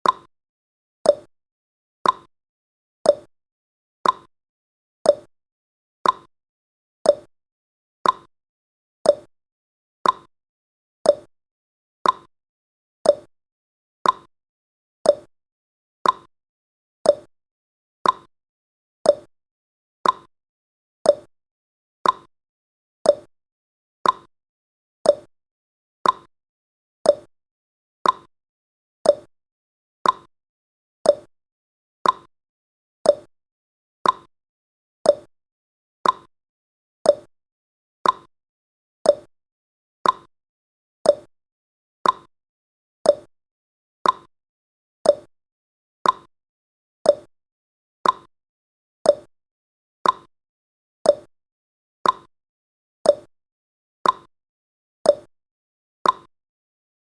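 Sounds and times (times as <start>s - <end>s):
timer ticking: 0.0s - 0.3s, 1.1s - 1.3s, 2.0s - 2.3s, 3.1s - 3.3s, 4.0s - 4.3s, 5.1s - 5.3s, 6.0s - 6.3s, 7.1s - 7.3s, 8.0s - 8.3s, 9.1s - 9.3s, 10.0s - 10.3s, 11.1s - 11.3s, 12.0s - 12.3s, 13.1s - 13.3s, 14.0s - 14.3s, 15.1s - 15.3s, 16.0s - 16.3s, 17.1s - 17.3s, 18.0s - 18.3s, 19.1s - 19.3s, 20.0s - 20.3s, 21.1s - 21.3s, 22.0s - 22.3s, 23.1s - 23.3s, 24.0s - 24.3s, 25.1s - 25.3s, 26.0s - 26.3s, 27.1s - 27.3s, 28.0s - 28.3s, 29.0s - 29.3s, 30.0s - 30.3s, 31.0s - 31.3s, 32.0s - 32.3s, 33.1s - 33.3s, 34.0s - 34.3s, 35.1s - 35.3s, 36.0s - 36.3s, 37.1s - 37.3s, 38.0s - 38.3s, 39.1s - 39.3s, 40.0s - 40.3s, 41.1s - 41.3s, 42.0s - 42.3s, 43.1s - 43.3s, 44.0s - 44.3s, 45.1s - 45.3s, 46.0s - 46.3s, 47.1s - 47.3s, 48.0s - 48.3s, 49.1s - 49.3s, 50.0s - 50.3s, 51.1s - 51.3s, 52.0s - 52.3s, 53.1s - 53.3s, 54.0s - 54.3s, 55.1s - 55.3s, 56.0s - 56.3s.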